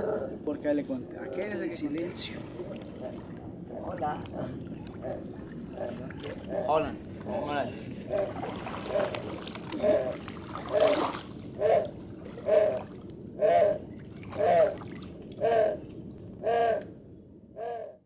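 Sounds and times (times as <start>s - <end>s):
low background hiss: 0.0s - 18.0s
animal calling: 2.5s - 7.4s, 8.0s - 16.9s, 17.6s - 18.0s.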